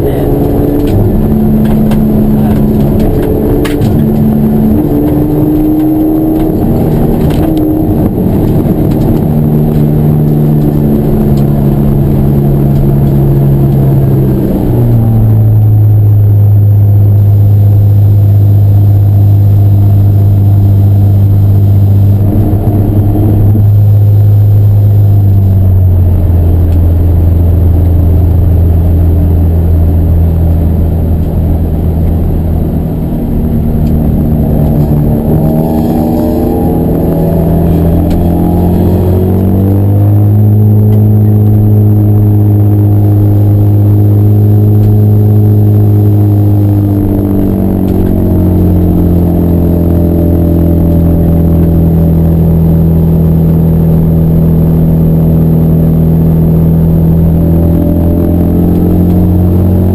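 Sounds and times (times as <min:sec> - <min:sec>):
racing car engine running hard: 0:00.0 - 0:59.9.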